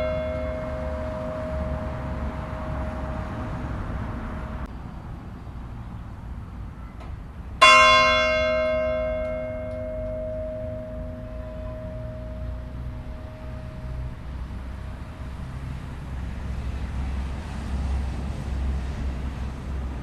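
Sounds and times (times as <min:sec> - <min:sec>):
church bell tolling: 0:00.0 - 0:04.7, 0:07.6 - 0:15.5.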